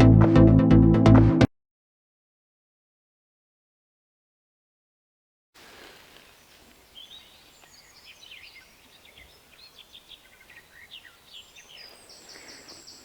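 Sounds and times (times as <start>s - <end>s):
birds chirping and whistling: 6.3s - 13.0s.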